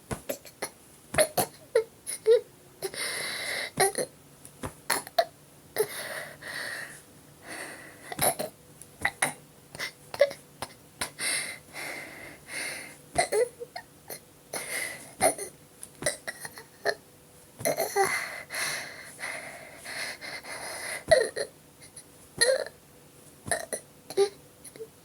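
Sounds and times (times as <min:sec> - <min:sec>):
hand patting belly: 0:00.0 - 0:01.5, 0:03.8 - 0:05.1
woman breathing hard and wheezing: 0:02.1 - 0:04.0, 0:05.8 - 0:08.3, 0:11.0 - 0:13.1, 0:14.5 - 0:15.5, 0:17.6 - 0:22.6.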